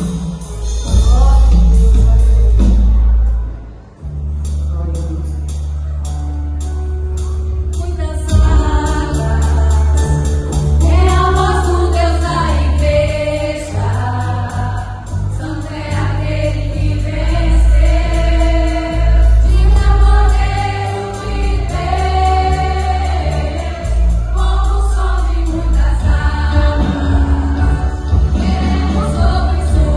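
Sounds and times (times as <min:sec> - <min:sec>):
band with heavy bass and beat: 0:00.0 - 0:29.9
choir singing held notes: 0:09.0 - 0:29.9.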